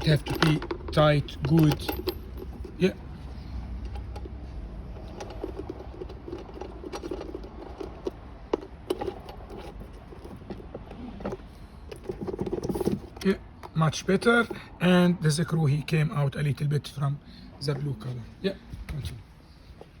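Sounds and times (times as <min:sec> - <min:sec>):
metallic clicks and rattles: 0:00.0 - 0:02.8, 0:03.7 - 0:13.8
handling noise: 0:00.0 - 0:13.8.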